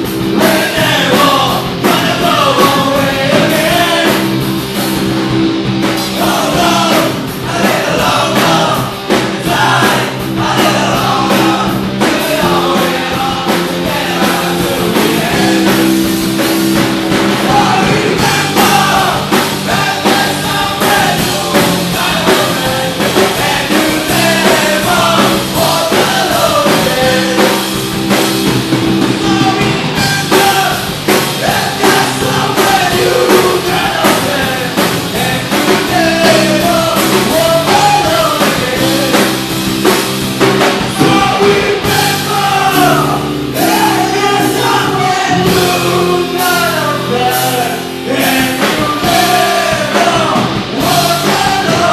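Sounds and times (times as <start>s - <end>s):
punk rock band playing: 0.0s - 51.9s
person singing: 0.3s - 4.4s, 6.1s - 16.1s, 17.2s - 27.9s, 29.0s - 39.5s, 40.6s - 51.9s.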